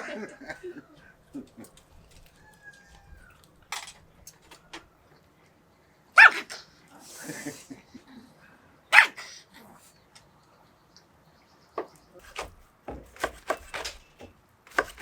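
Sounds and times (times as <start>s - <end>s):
dog barking: 6.2s - 6.6s, 8.9s - 9.3s.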